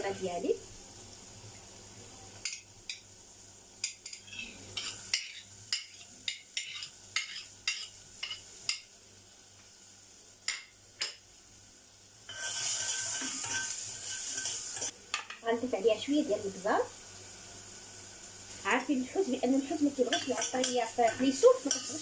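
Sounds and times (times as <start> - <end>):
onion sizzling in butter: 0.0 - 22.0
utensil scraping a pot: 4.1 - 5.5.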